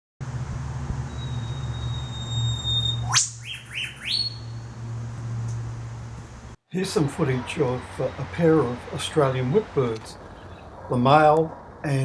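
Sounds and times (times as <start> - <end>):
steady low hum: 0.2 - 10.9
bird long whistle and whip-crack: 1.1 - 4.7.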